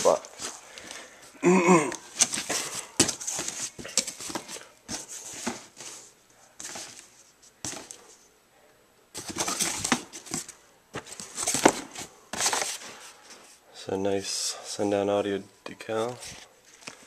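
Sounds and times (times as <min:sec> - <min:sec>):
cardboard packing rustling: 0:00.0 - 0:01.3, 0:02.0 - 0:08.2, 0:09.2 - 0:13.6.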